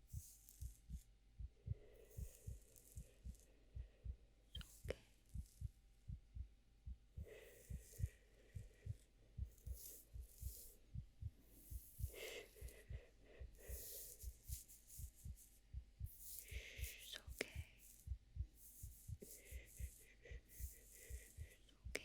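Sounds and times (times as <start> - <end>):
heartbeat double thump: 0.8 - 3.1, 3.8 - 13.7, 14.3 - 20.4
soft hissing rustling: 13.6 - 21.6.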